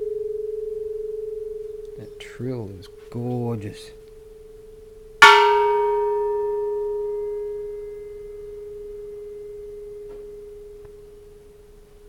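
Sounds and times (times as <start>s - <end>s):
bronze bell struck: 5.2s - 11.1s.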